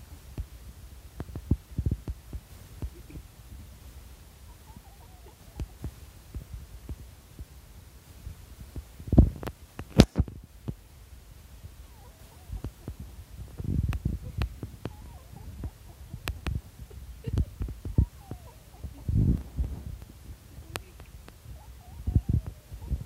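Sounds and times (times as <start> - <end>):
kitten squeaking: 4.5 - 5.9, 14.0 - 19.2, 20.7 - 23.0
sharp click: 9.4 - 10.3
low thumps and knocks: 12.3 - 23.0.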